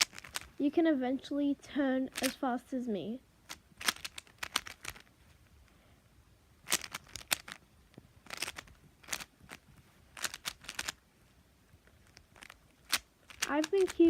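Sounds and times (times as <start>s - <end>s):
puzzle cube clicking as turned: 0.0s - 0.6s, 2.1s - 2.4s, 3.5s - 5.1s, 6.6s - 7.6s, 8.2s - 11.0s, 11.8s - 14.0s.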